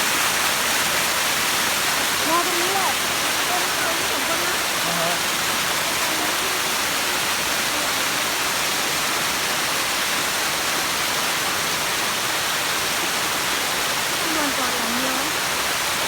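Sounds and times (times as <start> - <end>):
waterfall rushing: 0.0 - 16.0.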